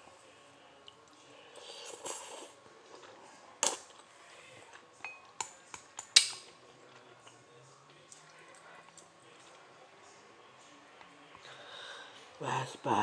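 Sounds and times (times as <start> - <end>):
utensils clinking on a dish: 5.0 - 6.5.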